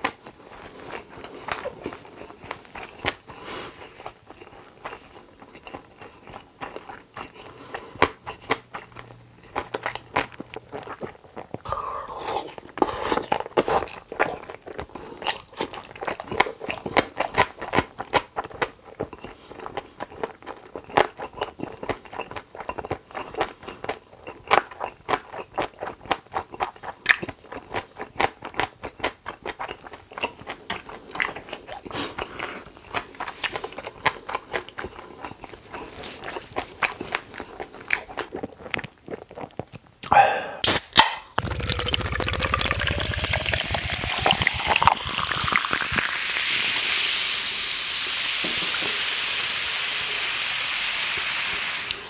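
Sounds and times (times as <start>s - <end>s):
chewing and crunching: 0.0s - 40.1s.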